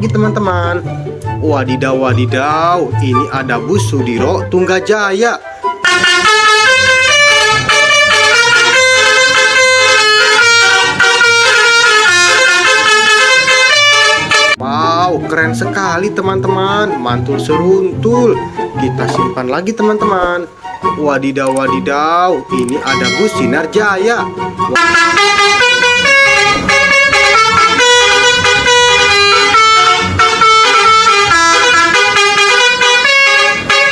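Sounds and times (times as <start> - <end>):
multi-tone bus horn tune: 5.8 - 14.6, 22.8 - 33.9.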